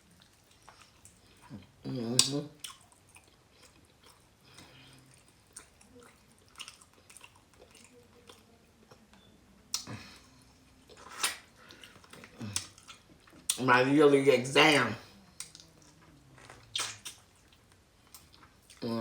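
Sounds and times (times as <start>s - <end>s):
soft chewing: 0.0s - 13.6s, 15.0s - 19.0s
wet mouth clicks and smacks: 2.1s - 2.9s, 9.7s - 10.0s, 11.0s - 13.6s, 16.6s - 17.5s.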